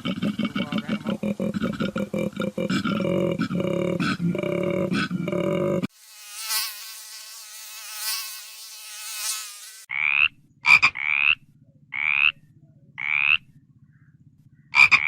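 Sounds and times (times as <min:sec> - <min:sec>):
insect buzzing: 0:05.9 - 0:10.2
frog croaking: 0:09.9 - 0:12.4, 0:13.0 - 0:13.6, 0:14.7 - 0:15.0.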